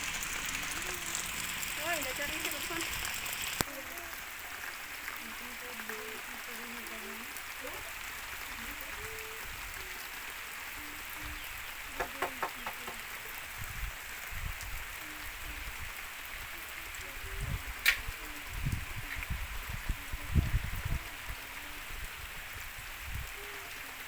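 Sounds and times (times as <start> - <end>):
drips and taps: 0.0 - 3.8, 12.0 - 13.1
heavy rain hissing: 0.0 - 24.0.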